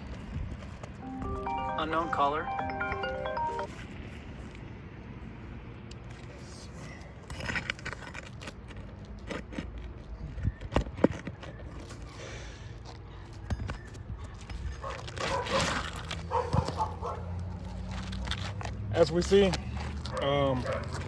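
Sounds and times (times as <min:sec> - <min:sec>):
tools scraping and clicking on shingles: 0:05.9 - 0:16.9.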